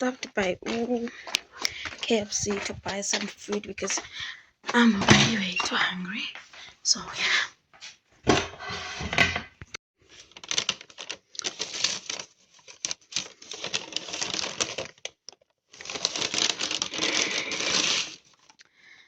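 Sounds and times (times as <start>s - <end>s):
rustling and crinkling: 0.0s - 6.6s, 10.0s - 18.6s.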